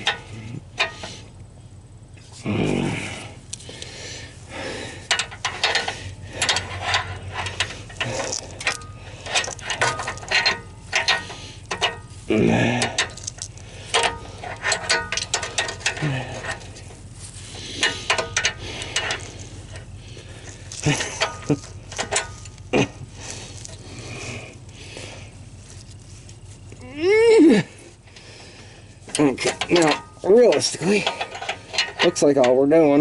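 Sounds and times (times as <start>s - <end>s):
ratchet wrench clicking: 5.0s - 16.9s, 17.7s - 24.4s
metallic knocks: 5.1s - 12.2s, 13.9s - 16.7s, 17.8s - 19.9s, 29.1s - 32.6s.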